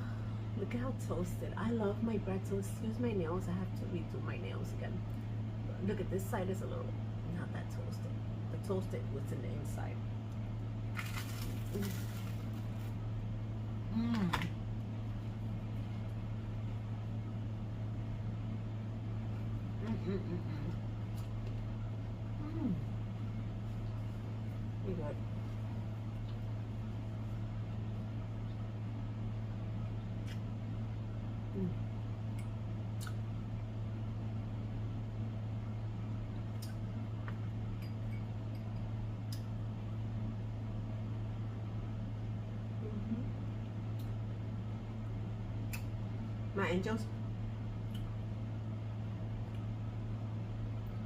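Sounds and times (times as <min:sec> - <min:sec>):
steady low hum: 0:00.0 - 0:51.0
crunching toast: 0:10.9 - 0:13.0
person humming mm: 0:13.8 - 0:14.6, 0:19.8 - 0:20.8, 0:22.4 - 0:23.0, 0:31.5 - 0:31.9, 0:42.8 - 0:43.4.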